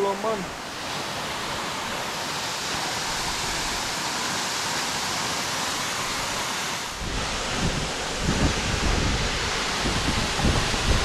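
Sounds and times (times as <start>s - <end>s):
waterfall rushing: 0.0s - 11.0s
wind buffeting microphone: 6.9s - 11.0s.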